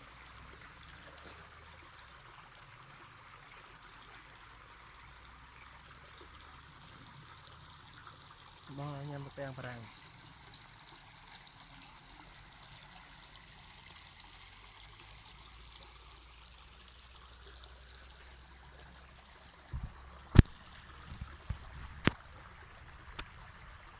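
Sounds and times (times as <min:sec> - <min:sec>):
stream water flowing: 0:00.0 - 0:23.9
high-pitched insect tone: 0:08.0 - 0:23.9.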